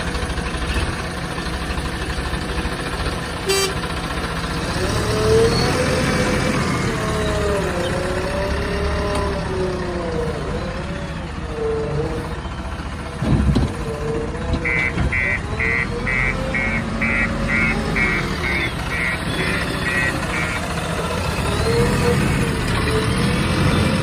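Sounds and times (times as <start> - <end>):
diesel engine running: 0.0 - 24.0
reversing alarm beeping: 14.6 - 20.8.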